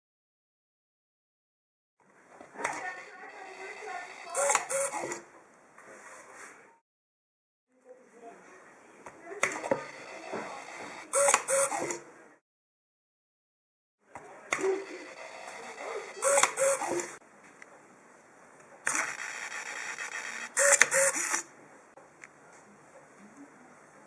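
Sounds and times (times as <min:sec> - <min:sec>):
small servos whirring: 0:02.6 - 0:05.3, 0:09.4 - 0:12.0, 0:14.5 - 0:17.2, 0:18.8 - 0:21.5
short loud servo buzzes: 0:03.8 - 0:05.2, 0:09.8 - 0:12.0, 0:14.6 - 0:17.2, 0:18.9 - 0:21.5.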